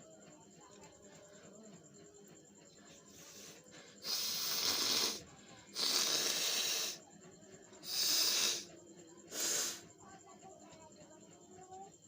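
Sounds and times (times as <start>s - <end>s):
person blowing nose: 4.0s - 5.2s, 5.8s - 7.0s, 7.8s - 8.7s, 9.3s - 9.8s.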